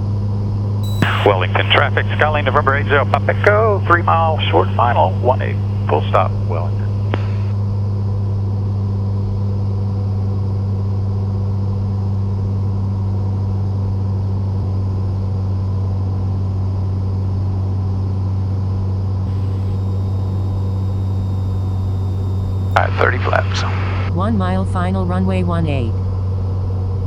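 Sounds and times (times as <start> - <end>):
aircraft engine droning: 0.8 - 7.6, 19.3 - 24.1.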